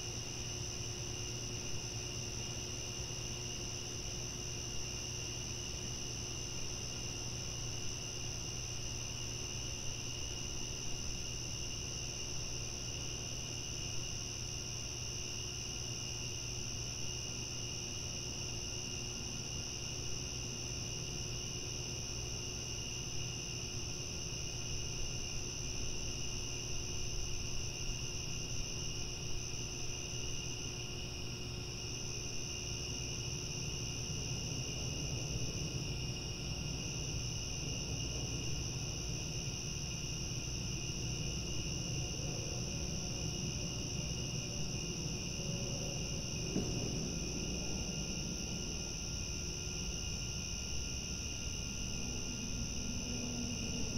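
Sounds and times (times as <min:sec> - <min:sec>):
crickets chirping: 0:00.0 - 0:53.9
low background rumble: 0:34.2 - 0:53.9.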